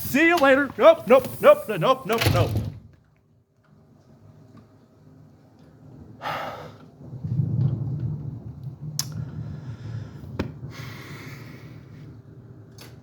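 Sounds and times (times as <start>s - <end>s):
hissy burst: 0.0s - 2.6s
rolling thunder rumble: 5.8s - 13.0s.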